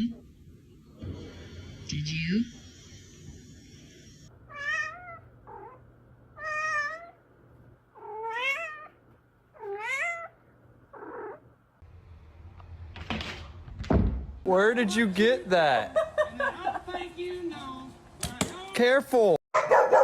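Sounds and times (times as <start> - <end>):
cat meowing: 4.5 - 5.8, 6.4 - 7.2, 8.0 - 9.0, 9.6 - 10.4.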